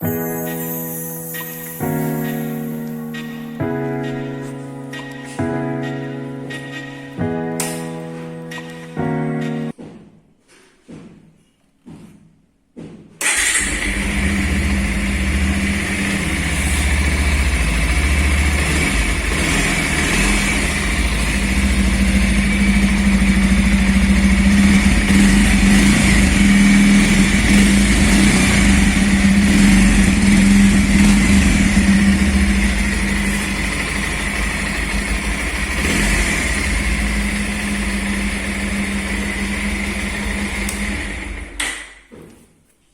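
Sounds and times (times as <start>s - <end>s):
motorcycle engine starting and idling: 13.2s - 42.1s.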